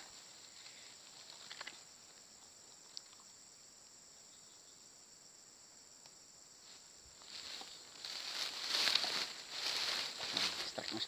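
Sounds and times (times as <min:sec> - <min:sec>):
crickets chirring: 0:00.0 - 0:11.0
rustling: 0:06.6 - 0:11.0.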